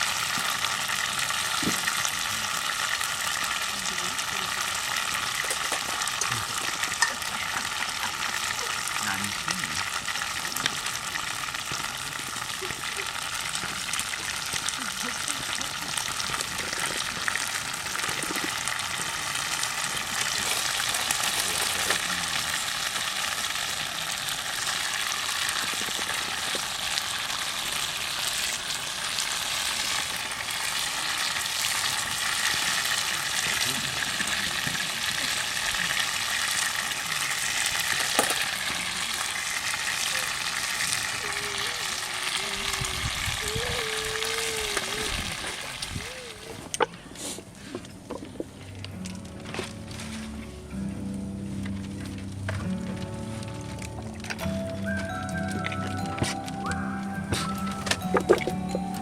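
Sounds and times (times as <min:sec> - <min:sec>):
campfire crackling and hissing: 0:00.0 - 0:59.0
fire pops: 0:24.5 - 0:26.7.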